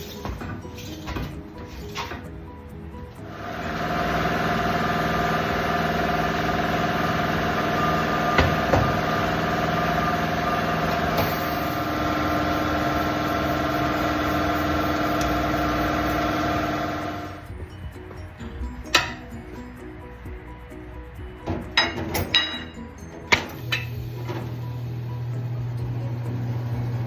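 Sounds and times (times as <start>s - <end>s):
motor humming: 3.0s - 18.0s, 23.4s - 27.0s.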